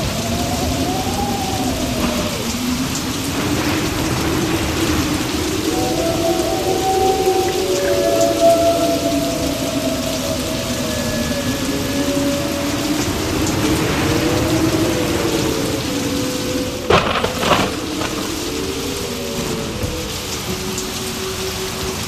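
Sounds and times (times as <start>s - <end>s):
low wavering tones: 0.0s - 22.0s
steady rain: 0.0s - 22.0s
sharp thunder cracks: 16.8s - 18.7s.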